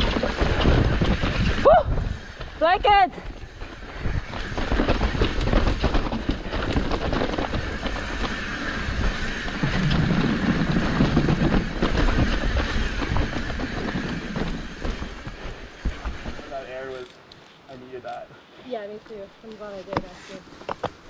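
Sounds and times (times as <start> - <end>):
bike rattling: 0.0 - 17.0
tyres rumbling on dirt: 0.0 - 17.0.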